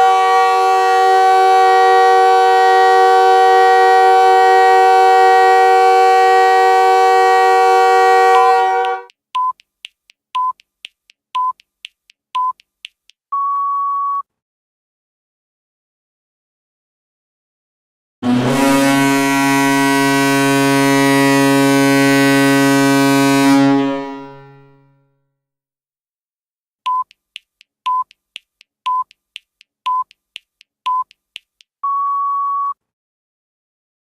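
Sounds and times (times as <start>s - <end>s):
goal horn blowing: 0.0s - 9.1s, 18.2s - 24.8s
electronic countdown beeps: 9.0s - 14.2s, 26.9s - 32.8s.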